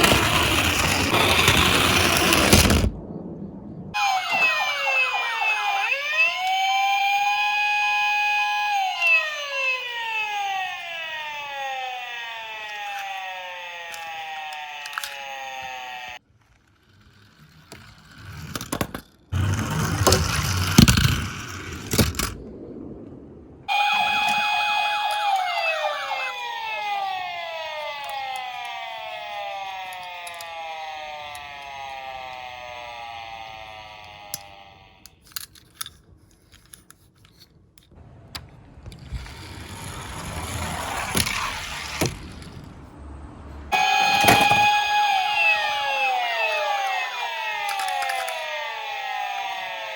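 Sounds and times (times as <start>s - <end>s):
toy siren wailing: 0.0s - 2.9s, 4.0s - 16.2s, 23.7s - 35.5s, 38.9s - 42.7s, 43.7s - 49.9s
toy cars rolling with rumbling clatter: 0.0s - 3.0s, 11.4s - 22.4s, 23.7s - 43.0s, 43.7s - 49.9s.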